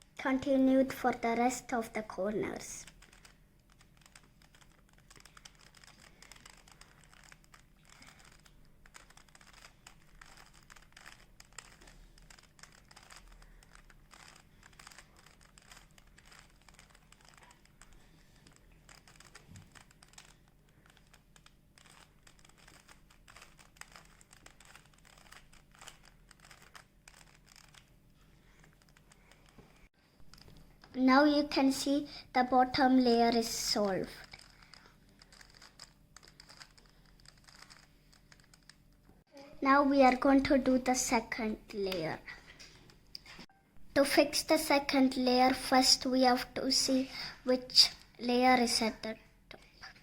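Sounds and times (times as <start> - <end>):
puzzle cube plastic clicking: 2.6 - 30.9, 33.8 - 39.0.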